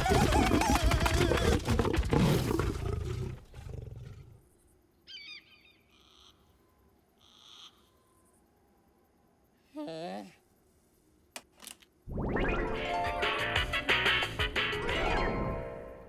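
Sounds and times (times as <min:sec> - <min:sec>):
slapstick clatter: 0:11.4 - 0:11.9.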